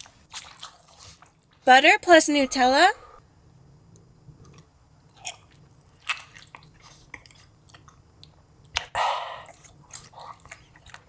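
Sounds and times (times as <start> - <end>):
wet chewing clicks: 4.4 - 11.0.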